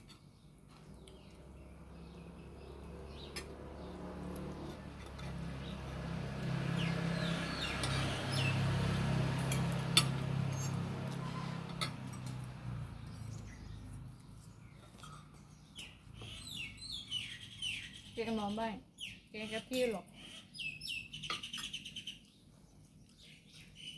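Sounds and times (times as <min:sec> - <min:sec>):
birds chirping: 0:00.0 - 0:23.9
light clicks and clinks: 0:09.4 - 0:16.0.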